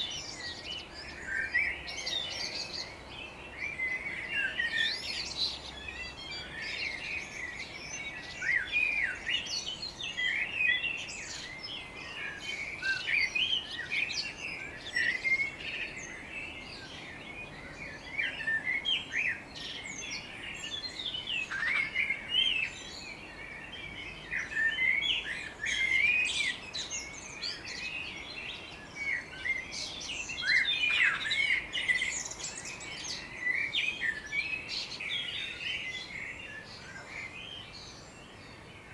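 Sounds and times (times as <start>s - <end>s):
songbirds chirping and singing: 0.0s - 38.9s.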